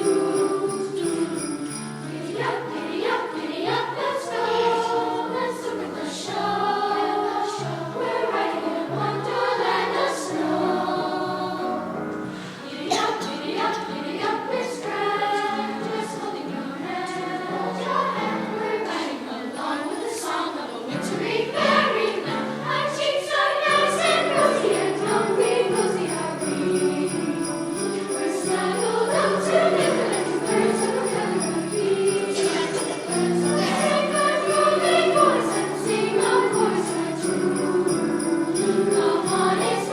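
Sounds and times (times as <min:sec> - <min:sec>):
jingle bells shaking: 0:00.0 - 0:02.6, 0:23.7 - 0:39.9
youth choir singing: 0:00.0 - 0:39.9.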